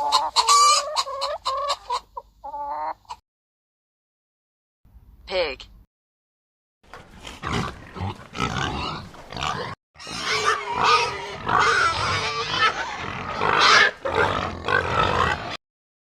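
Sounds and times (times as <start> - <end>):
pig grunting: 7.2 - 15.6.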